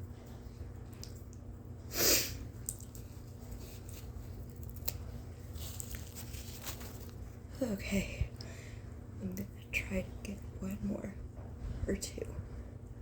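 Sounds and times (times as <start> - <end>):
short sharp burst of breath: 1.9 - 2.4
rustling: 2.8 - 7.5.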